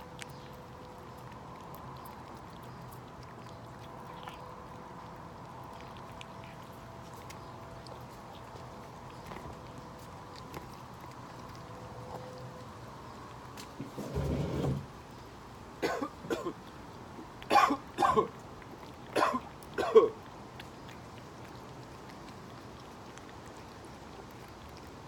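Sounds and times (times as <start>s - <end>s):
short sharp coughing: 15.8s - 16.6s, 17.5s - 18.3s, 19.2s - 20.2s.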